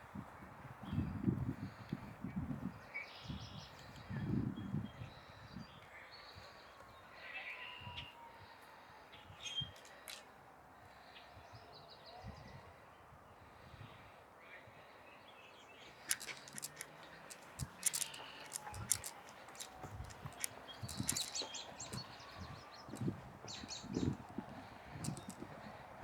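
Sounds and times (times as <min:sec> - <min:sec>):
wind rumbling on microphone: 0:00.0 - 0:05.8, 0:16.1 - 0:26.0
sharp crackling clicks: 0:09.8 - 0:10.2, 0:16.1 - 0:22.1, 0:25.0 - 0:25.5
bird chirps: 0:15.7 - 0:24.3.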